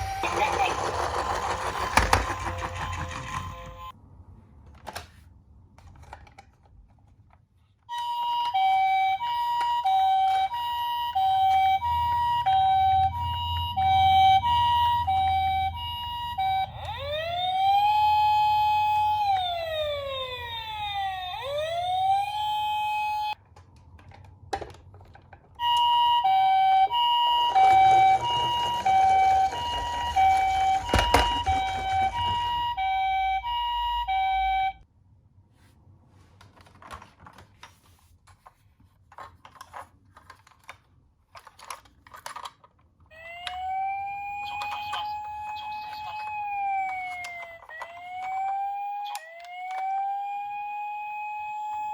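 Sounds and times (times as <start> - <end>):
toy police siren wailing: 0.0 - 3.9, 7.9 - 23.4, 25.6 - 34.8, 43.1 - 51.9
toy ambulance two-tone siren: 0.0 - 4.0, 7.9 - 23.4, 25.6 - 34.9, 43.1 - 51.9.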